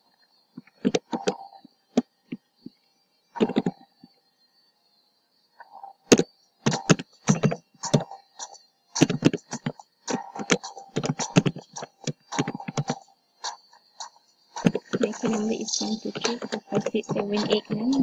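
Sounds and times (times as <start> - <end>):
faint steady tone: 0.0 - 18.0
computer keyboard typing: 3.4 - 3.8, 6.1 - 18.0.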